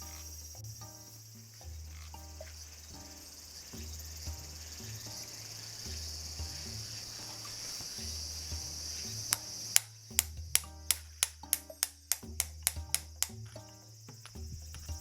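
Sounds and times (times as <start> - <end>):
background music with bass line: 0.0 - 15.0
crickets chirring: 0.0 - 15.0
sharp clicks: 9.3 - 13.4.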